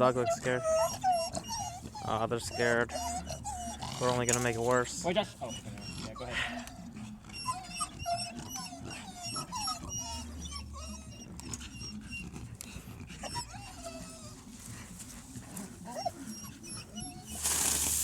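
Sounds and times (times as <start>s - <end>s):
dogs whining and whimpering: 0.0s - 18.0s
faint crackles: 17.3s - 18.0s.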